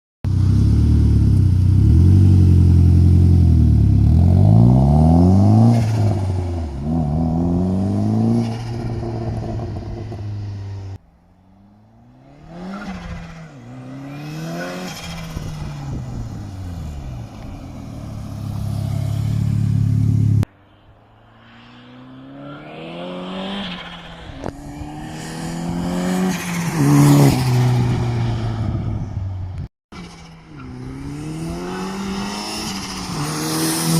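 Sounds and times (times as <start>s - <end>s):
car engine revving: 0.4s - 28.7s, 30.0s - 33.9s
car driving by: 2.0s - 29.3s.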